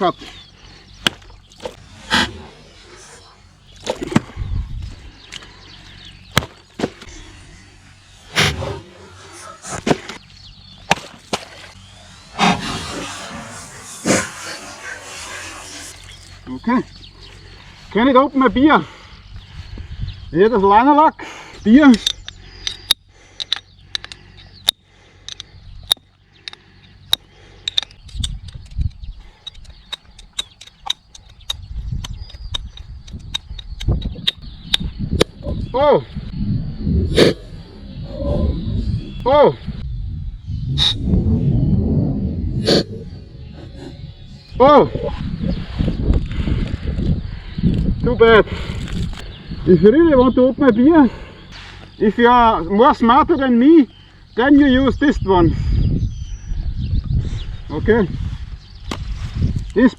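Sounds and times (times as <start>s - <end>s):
knife cutting wood: 8.2s - 10.3s
low handling rumble: 32.7s - 47.3s.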